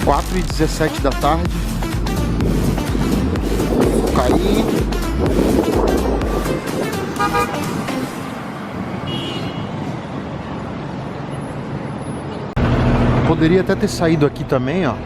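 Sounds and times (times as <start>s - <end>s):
street traffic: 0.0s - 15.0s
car horn: 5.4s - 10.0s.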